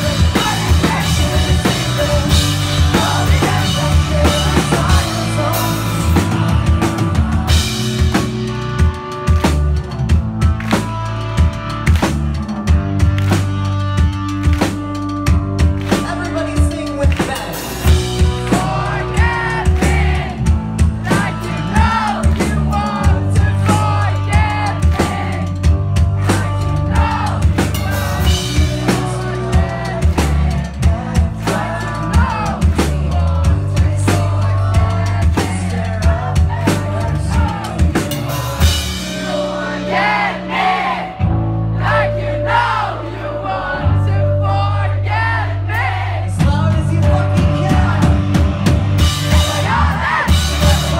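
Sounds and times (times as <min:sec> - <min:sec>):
person singing: 0:00.0 - 0:08.4, 0:21.0 - 0:40.9, 0:49.0 - 0:50.9
drum kit beat: 0:00.0 - 0:43.3, 0:45.0 - 0:50.9
bass line: 0:00.0 - 0:50.9.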